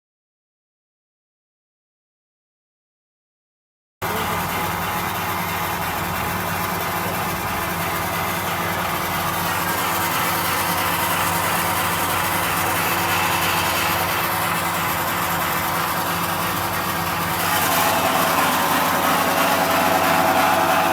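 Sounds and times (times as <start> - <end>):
machine hum: 4.0 - 20.9
even whirring: 17.2 - 20.9.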